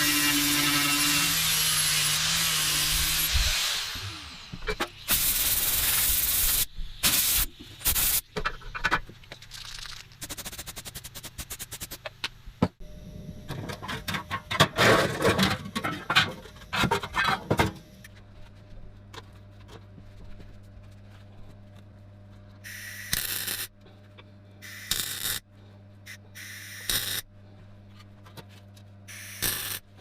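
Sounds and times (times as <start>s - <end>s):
low steady hum: 12.1s - 30.0s.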